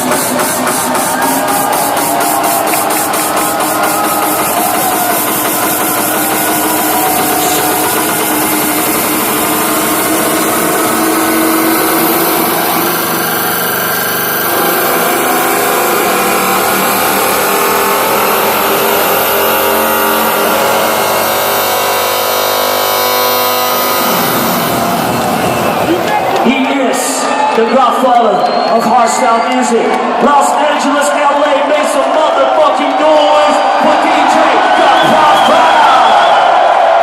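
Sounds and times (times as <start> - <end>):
loud distorted hardstyle music: 0.0 - 27.5.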